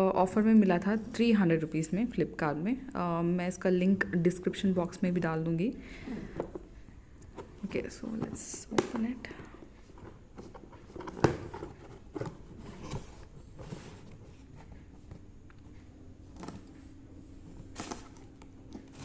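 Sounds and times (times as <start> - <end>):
packaging box rustling: 9.8 - 15.2, 17.4 - 19.0.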